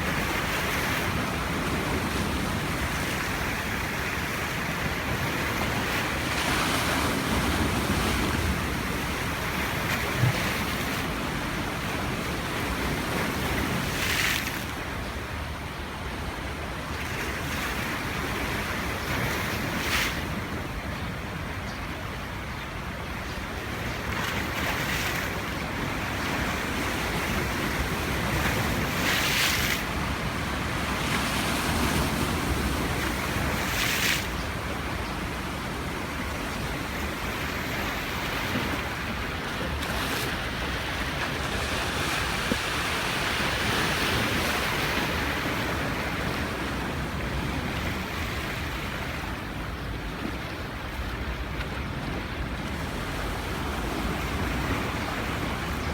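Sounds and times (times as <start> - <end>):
steady rush of surf: 25.6 - 49.7.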